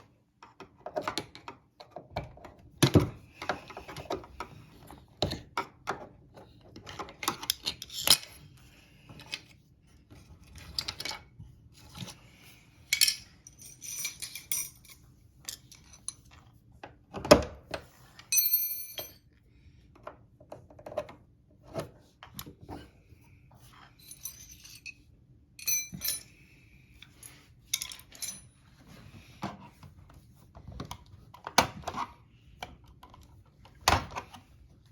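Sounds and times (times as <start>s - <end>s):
glassy clinks and rattles: 12.9s - 16.2s, 24.0s - 25.0s, 25.6s - 26.3s.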